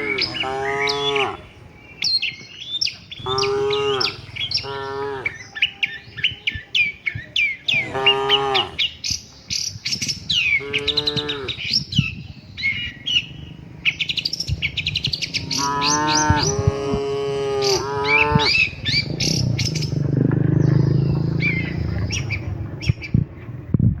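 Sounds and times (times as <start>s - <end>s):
cattle mooing: 0.0s - 1.7s, 3.2s - 6.0s, 7.7s - 8.9s, 10.5s - 11.6s, 15.2s - 22.3s
small birds chirping: 0.0s - 23.6s.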